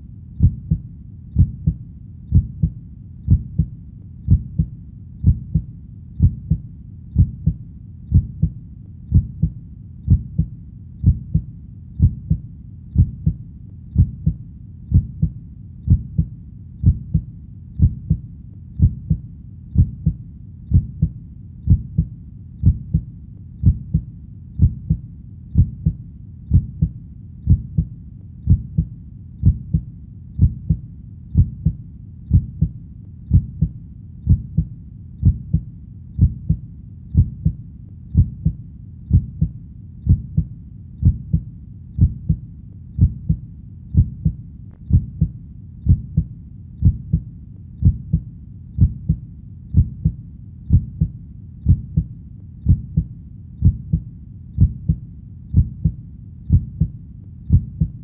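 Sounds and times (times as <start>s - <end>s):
faint low rumble: 0.0s - 58.0s
heartbeat double thump: 0.4s - 0.8s, 1.4s - 3.7s, 4.3s - 6.6s, 7.2s - 12.4s, 13.0s - 13.4s, 14.0s - 18.2s, 18.8s - 19.2s, 19.8s - 25.0s, 25.6s - 27.9s, 28.5s - 29.8s, 30.4s - 35.6s, 36.2s - 36.6s, 37.2s - 37.6s, 38.2s - 39.5s, 40.1s - 41.4s, 42.0s - 42.4s, 43.0s - 43.4s, 44.0s - 48.2s, 48.8s - 49.2s, 49.8s - 54.0s, 54.6s - 56.9s, 57.5s - 58.0s.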